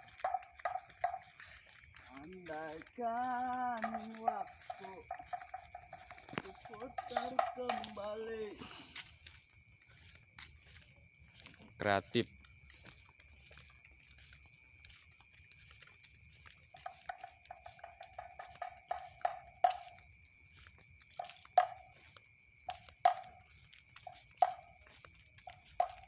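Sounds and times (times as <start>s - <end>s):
ringing knocks: 0.0s - 8.5s, 16.9s - 20.0s.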